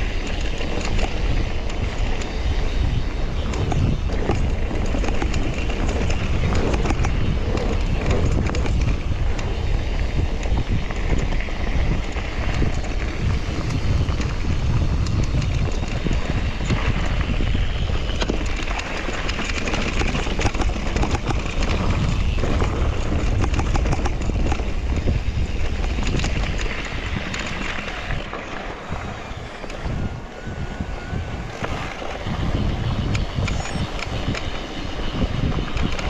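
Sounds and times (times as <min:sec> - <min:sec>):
bike knocks and rattles: 0:00.0 - 0:30.2
tyres on dirt trail: 0:00.0 - 0:36.0
wind on microphone: 0:00.0 - 0:36.0.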